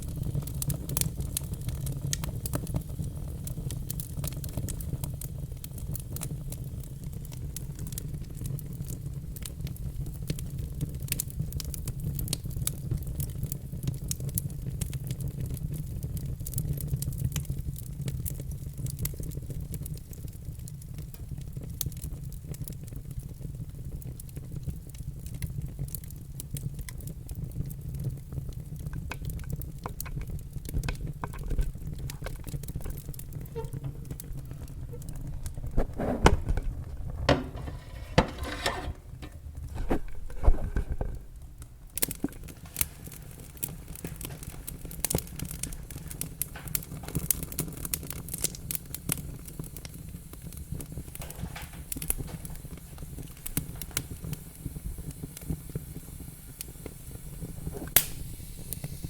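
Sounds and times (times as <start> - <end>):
fire low rumble: 0.0 - 59.0
wood fire crackling and popping: 0.0 - 59.0.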